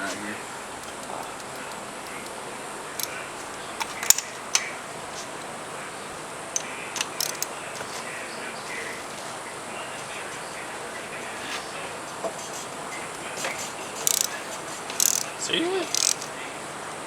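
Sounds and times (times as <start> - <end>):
metallic tool clicks: 0.8 - 2.4, 3.0 - 3.2, 3.8 - 4.7, 6.6 - 7.5, 14.0 - 16.3.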